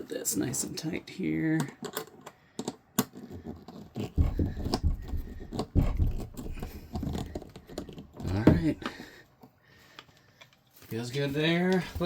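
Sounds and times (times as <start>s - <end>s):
plastic fittings clicking and scraping: 1.5s - 10.8s.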